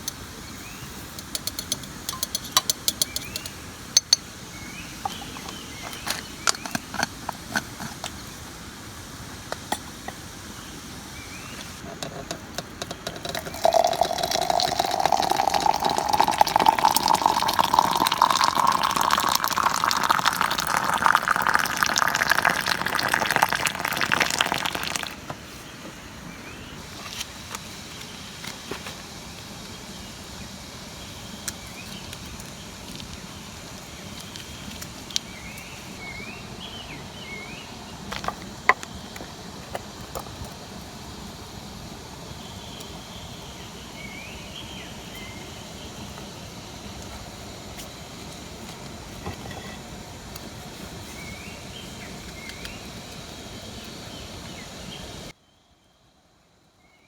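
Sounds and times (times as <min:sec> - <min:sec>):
water pouring into container: 0:13.2 - 0:25.2.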